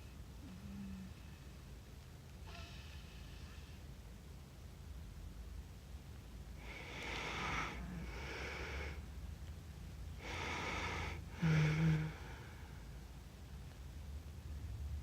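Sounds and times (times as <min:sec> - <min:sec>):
heavy sleeping breaths: 0:06.6 - 0:09.0, 0:10.1 - 0:13.0
loud buzzing snore: 0:06.6 - 0:09.0, 0:10.2 - 0:12.3.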